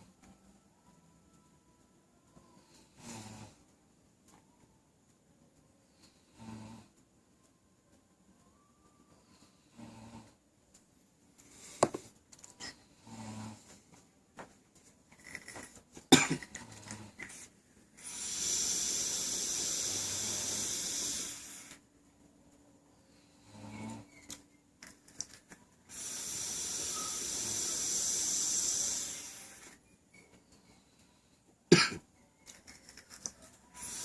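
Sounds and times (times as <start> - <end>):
person snoring: 2.8 - 3.6, 6.3 - 6.9, 9.5 - 10.4, 12.9 - 13.7, 18.0 - 21.8, 23.4 - 24.2, 25.9 - 29.7, 33.7 - 34.0.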